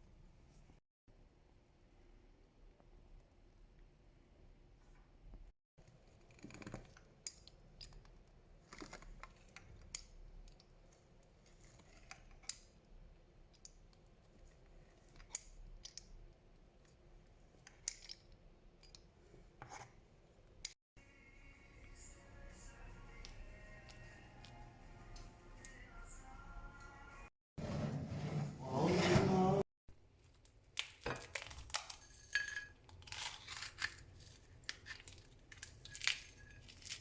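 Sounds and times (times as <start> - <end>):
rustling and handling sounds: 27.8 - 37.0.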